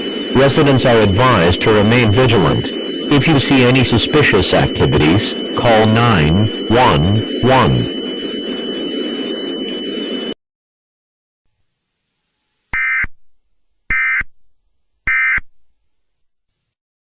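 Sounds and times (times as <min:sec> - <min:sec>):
buzzy digital data bursts: 0:00.0 - 0:09.3
steady high tones: 0:00.0 - 0:10.3
background hiss: 0:11.5 - 0:16.0.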